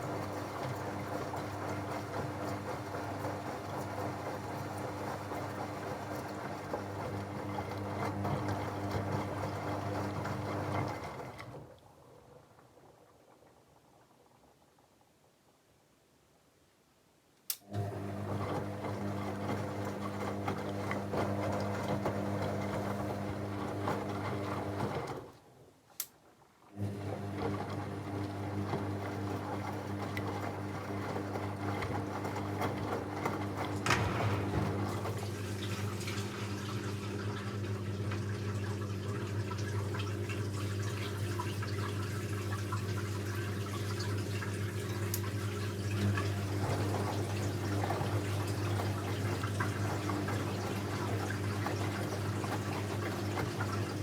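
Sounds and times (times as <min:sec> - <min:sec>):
water rushing into drum: 0:33.5 - 0:44.4.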